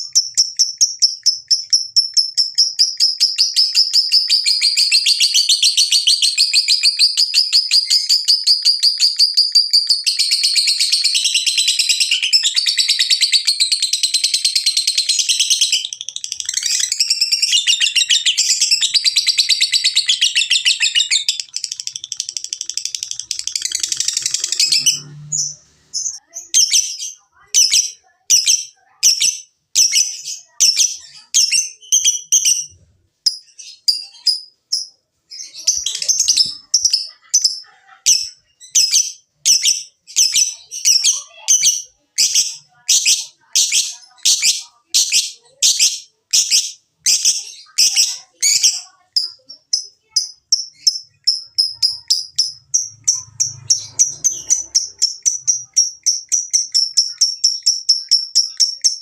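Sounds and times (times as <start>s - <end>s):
lovebird chirping and trilling: 0.0s - 59.0s.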